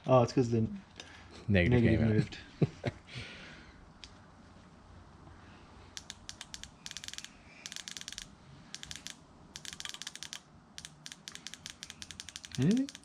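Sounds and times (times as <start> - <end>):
fuel injector clicking: 6.0 - 13.0.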